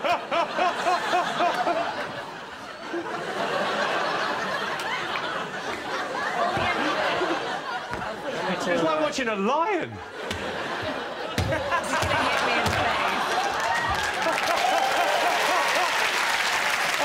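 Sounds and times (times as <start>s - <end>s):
crowd laughing: 0.0s - 17.0s
person's rhythmic laugh: 10.3s - 13.5s.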